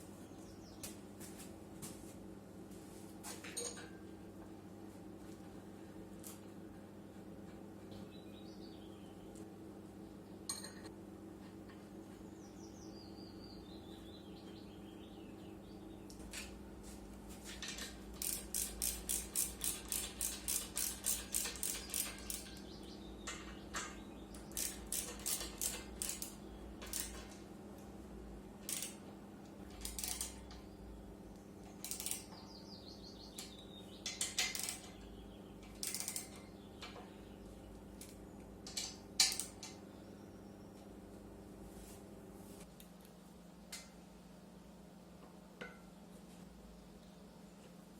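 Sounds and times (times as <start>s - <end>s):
sharp mechanical clicking: 18.1s - 22.8s, 24.3s - 27.4s, 28.6s - 30.6s, 31.7s - 32.4s, 33.3s - 35.0s, 35.6s - 36.5s, 38.0s - 39.8s.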